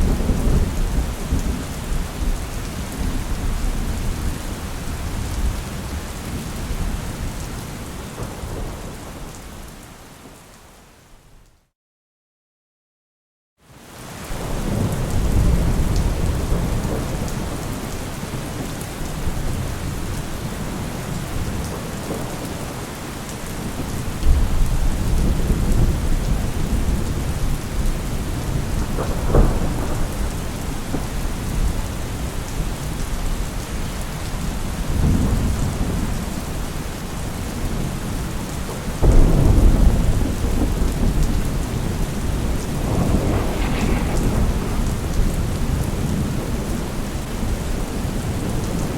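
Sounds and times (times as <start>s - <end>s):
thunder rolling: 0.0s - 2.4s, 39.0s - 48.6s
heavy rain: 0.0s - 11.4s, 13.6s - 48.9s
sharp thunder crack: 39.0s - 46.8s.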